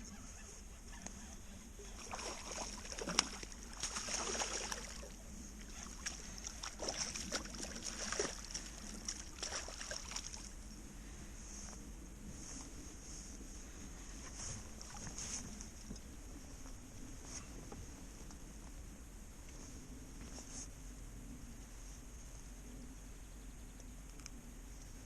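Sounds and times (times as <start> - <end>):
water splashing: 1.9 - 10.5.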